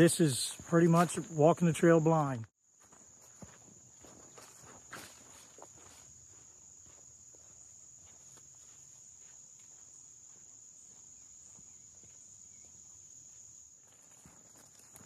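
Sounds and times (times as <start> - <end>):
faint insect chorus: 0.0 - 15.0.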